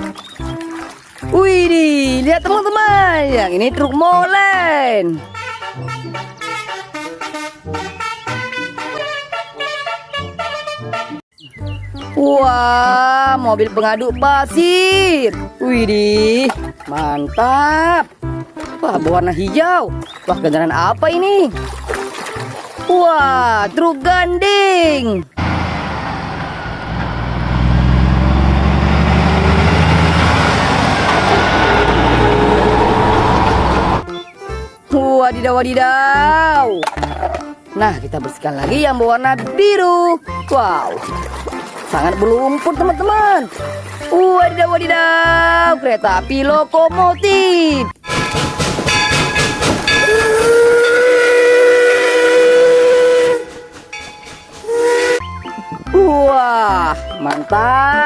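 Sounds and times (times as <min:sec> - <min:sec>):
truck engine rumbling: 0:25.2 - 0:34.6, 0:48.0 - 0:58.0
steam locomotive chuffing: 0:48.1 - 0:55.2
steam whistle blast: 0:49.8 - 0:54.0, 0:54.6 - 0:55.3.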